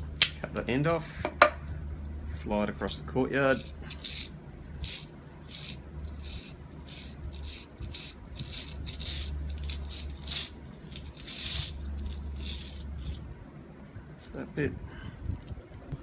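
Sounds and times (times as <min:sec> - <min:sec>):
steady low hum: 0:00.0 - 0:16.0
wire scraping out of motor: 0:03.4 - 0:13.3.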